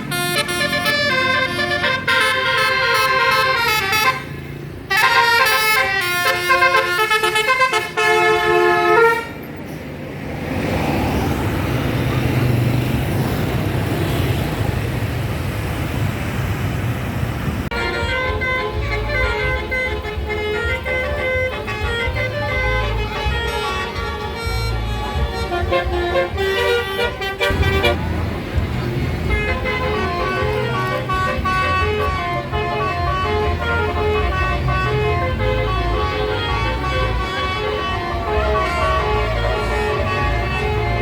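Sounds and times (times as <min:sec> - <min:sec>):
bus horn melody: 0:00.0 - 0:09.5, 0:17.7 - 0:41.0
engine and road noise: 0:00.0 - 0:41.0.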